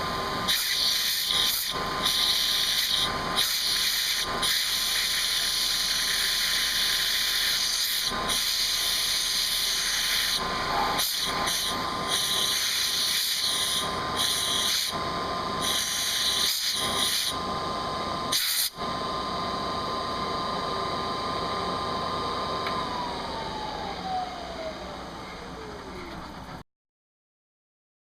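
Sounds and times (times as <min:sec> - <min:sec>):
milling machine running: 0:00.0 - 0:26.6
spindle whine spinning down: 0:08.0 - 0:18.4, 0:19.0 - 0:26.6
short bursts of high hiss: 0:18.3 - 0:18.8.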